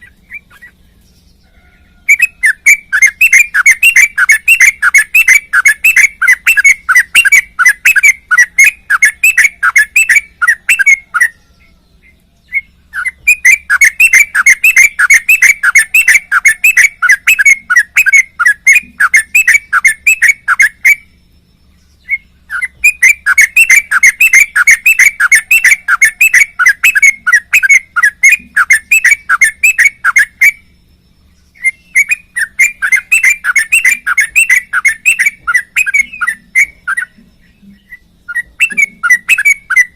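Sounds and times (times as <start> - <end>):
bulbul singing rapid whistled notes: 0.0 - 39.9.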